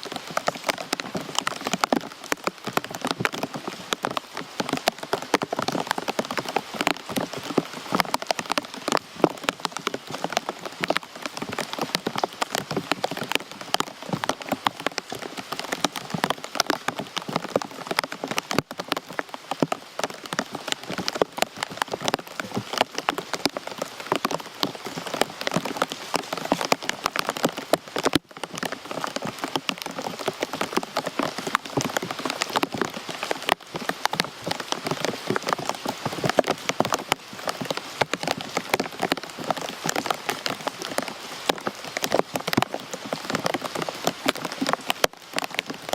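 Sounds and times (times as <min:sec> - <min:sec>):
rain pattering on a surface: 0:00.0 - 0:45.9.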